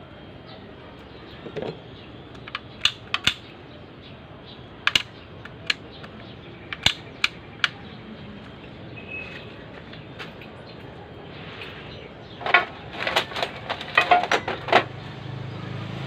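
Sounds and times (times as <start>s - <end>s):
metal tools clinking: 12.4s - 14.9s.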